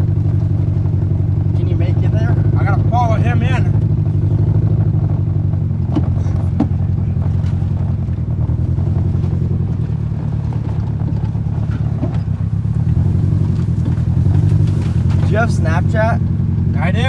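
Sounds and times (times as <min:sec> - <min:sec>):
low engine rumble: 0:00.0 - 0:17.0.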